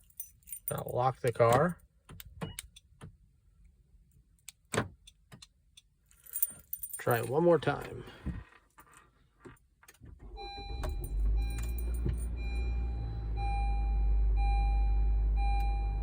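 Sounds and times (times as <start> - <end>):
car engine rumble: 0.2 - 16.0
dashboard warning chime beeping: 10.2 - 16.0.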